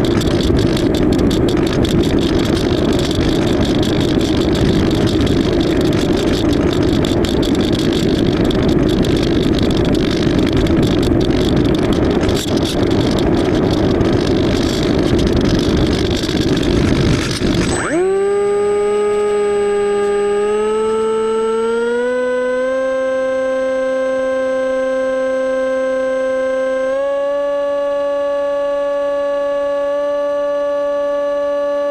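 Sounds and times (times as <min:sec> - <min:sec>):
wind rush: 0:00.0 - 0:22.2
steady whine rising in pitch: 0:09.5 - 0:31.9
electric motor noise: 0:10.6 - 0:31.9.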